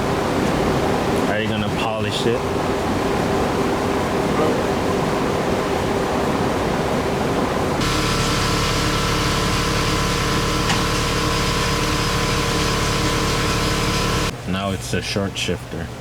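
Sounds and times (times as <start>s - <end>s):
power tool motor whine: 7.8s - 14.3s.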